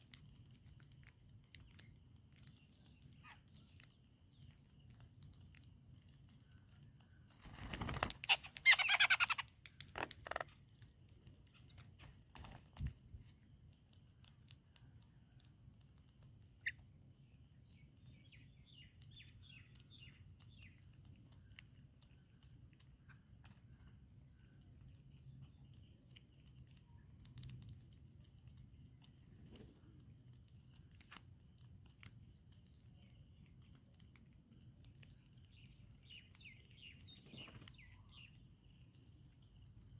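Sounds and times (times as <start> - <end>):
faint bird chirps: 0.0 - 39.9
wing flaps: 7.3 - 10.1
small clicks: 7.4 - 10.6
harsh bird call: 8.3 - 9.4.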